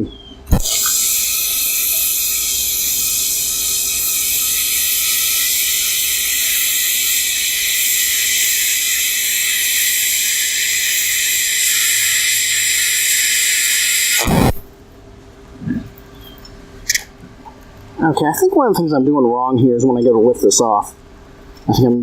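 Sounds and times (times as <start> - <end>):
faint steady whine: 0.0 - 21.9
welding arc hissing: 0.5 - 14.7.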